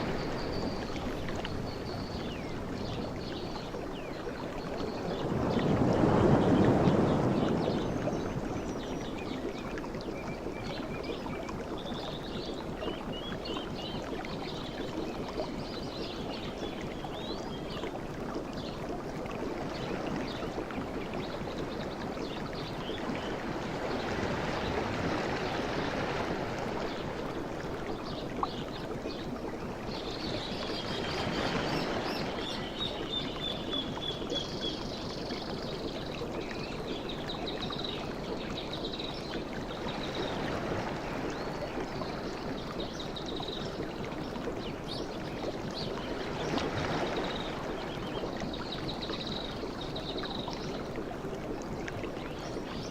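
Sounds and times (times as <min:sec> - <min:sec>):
sea waves washing: 0:05.0 - 0:08.6, 0:23.3 - 0:27.9.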